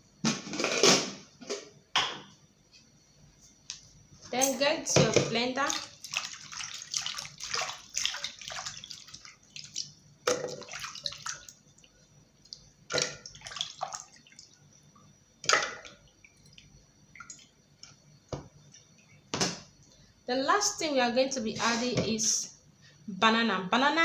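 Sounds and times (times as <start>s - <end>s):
water splashing and dripping: 5.6s - 14.6s, 15.4s - 17.5s.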